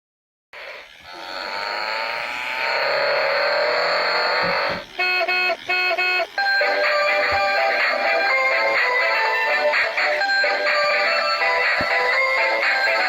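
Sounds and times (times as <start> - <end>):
engine-like whirring: 0.6 - 13.0
short electronic beeps: 5.0 - 6.6.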